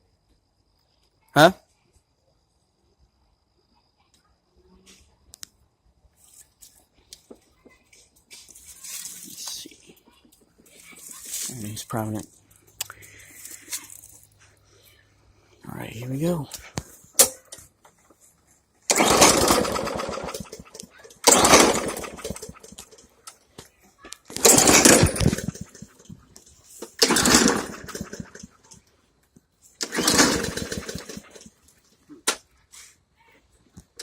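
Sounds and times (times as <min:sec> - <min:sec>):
lawn mower engine sputtering: 0:18.9 - 0:23.4, 0:24.2 - 0:28.9, 0:29.8 - 0:32.4.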